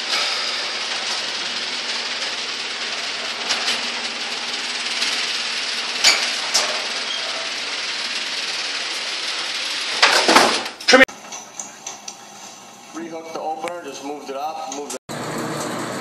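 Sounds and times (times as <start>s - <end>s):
garage door opener rumbling: 0.0s - 11.0s, 15.1s - 16.0s.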